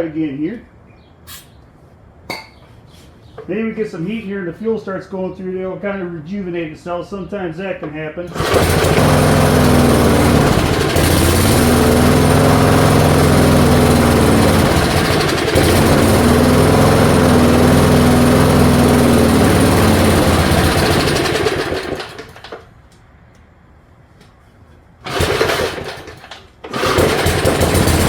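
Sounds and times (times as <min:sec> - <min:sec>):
push mower engine running: 0:08.3 - 0:22.7, 0:25.0 - 0:28.0.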